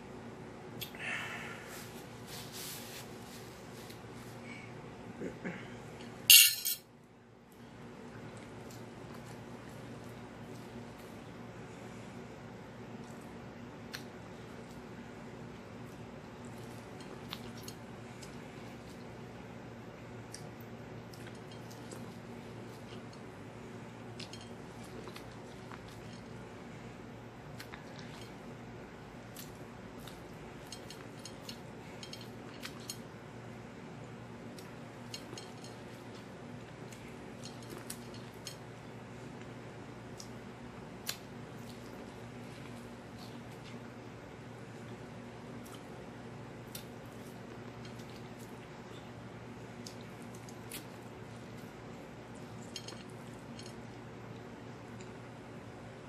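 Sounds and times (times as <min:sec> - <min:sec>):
steady low hum: 0:00.0 - 0:56.0
chewing and mouth smacking: 0:15.8 - 0:19.1, 0:20.2 - 0:23.3, 0:24.1 - 0:26.4, 0:27.5 - 0:28.4, 0:34.5 - 0:38.6, 0:49.7 - 0:51.7.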